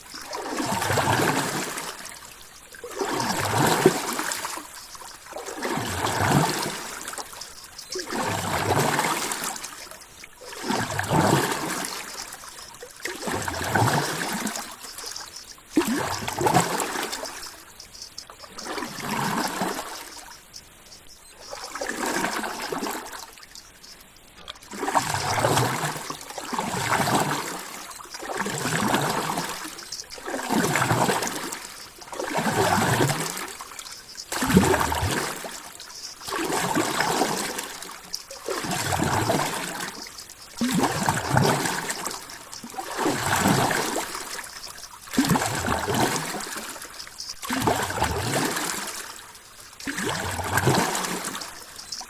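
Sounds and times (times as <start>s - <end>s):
ocean water splashing: 0.0s - 52.0s.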